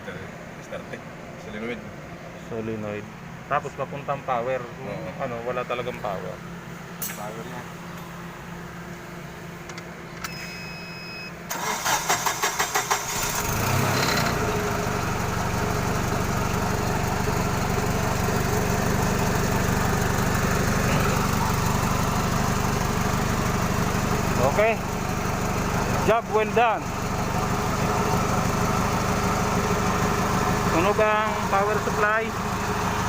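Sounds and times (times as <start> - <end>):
short electronic beep: 10.2 - 11.4
engine starter cranking: 11.5 - 14.4
forklift engine idling: 11.5 - 33.0.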